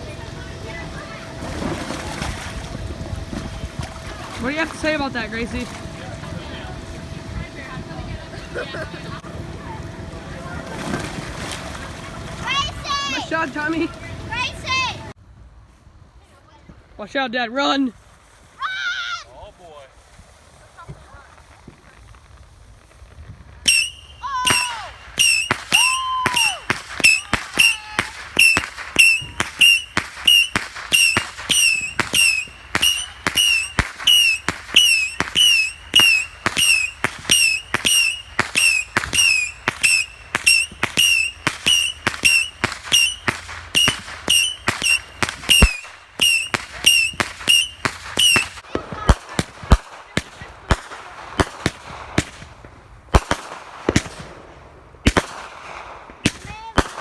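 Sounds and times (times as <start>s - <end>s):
firework bangs with whistles: 20.4s - 57.0s.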